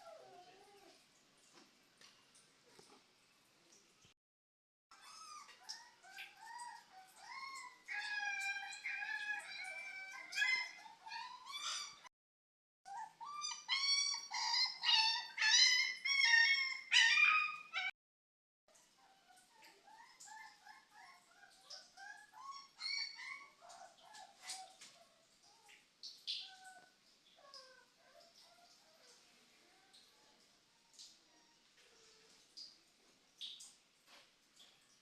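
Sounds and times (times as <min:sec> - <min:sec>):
animal whining and yelping: 0:04.9 - 0:12.1, 0:12.9 - 0:17.9, 0:19.0 - 0:32.2.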